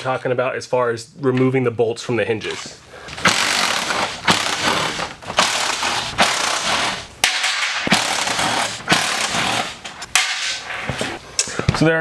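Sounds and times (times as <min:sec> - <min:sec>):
ratchet wrench clicking: 0:03.1 - 0:07.0, 0:07.8 - 0:09.7.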